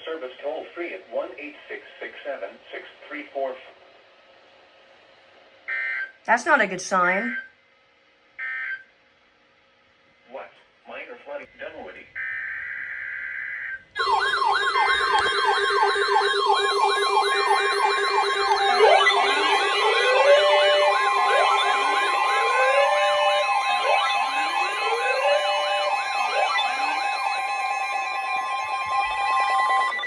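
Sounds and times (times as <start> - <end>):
electronic sirens wailing: 5.7 - 6.2, 12.2 - 30.0
siren whoop: 12.2 - 30.0.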